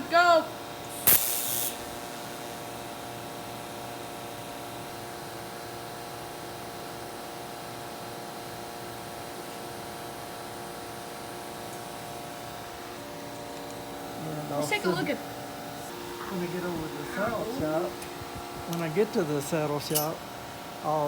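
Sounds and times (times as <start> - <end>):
welder electrical hum: 0.0 - 21.0
welding arc crackling hiss: 0.8 - 5.6, 9.1 - 21.0.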